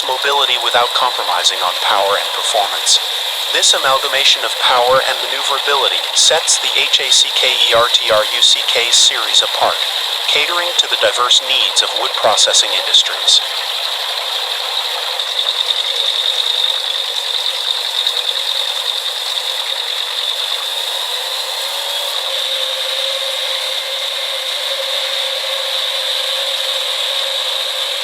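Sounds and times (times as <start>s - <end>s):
wood chipper chipping wood: 13.4s - 28.0s.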